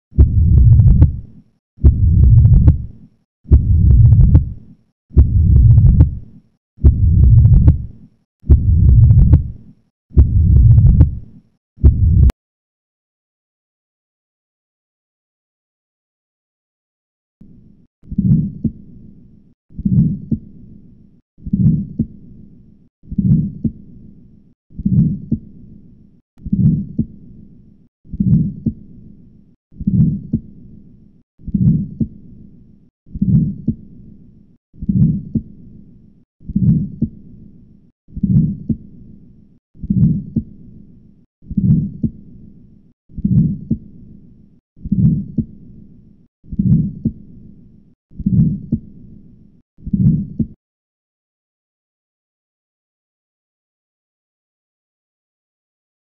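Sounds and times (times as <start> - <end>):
heart murmur: 0.2 - 1.2, 1.8 - 2.8, 3.5 - 4.5, 5.2 - 6.2, 6.8 - 7.8, 8.5 - 9.5, 10.2 - 11.2, 11.8 - 12.3
heartbeat thumps: 0.2 - 1.2, 1.8 - 2.8, 3.5 - 4.5, 5.1 - 6.2, 6.8 - 7.9, 8.5 - 9.5, 10.2 - 11.2, 11.8 - 12.3.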